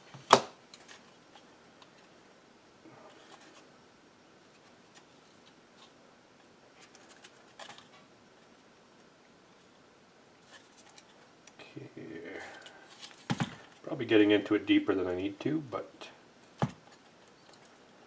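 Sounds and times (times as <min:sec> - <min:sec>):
plastic parts scraping: 0:06.8 - 0:08.1.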